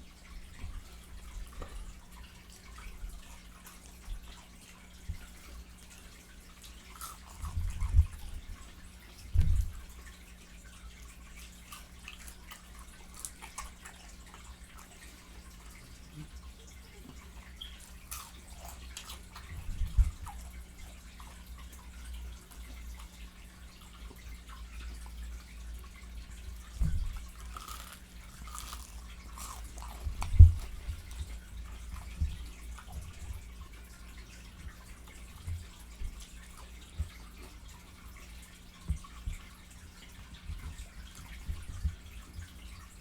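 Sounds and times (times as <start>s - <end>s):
lip-smacking and chewing: 1.4s - 8.8s, 11.1s - 16.4s, 26.6s - 37.8s.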